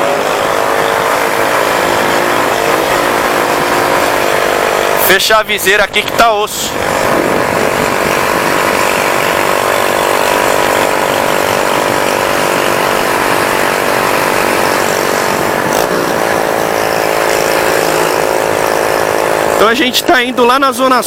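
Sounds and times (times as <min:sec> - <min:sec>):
motorcycle engine running: 0:00.0 - 0:21.0
wind noise on microphone: 0:06.7 - 0:09.5.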